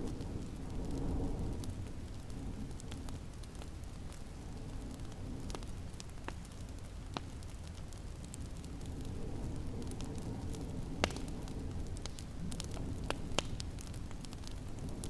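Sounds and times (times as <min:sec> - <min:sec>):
snowstorm wind rumbling: 0:00.0 - 0:06.0
wood fire crackling: 0:00.0 - 0:15.0.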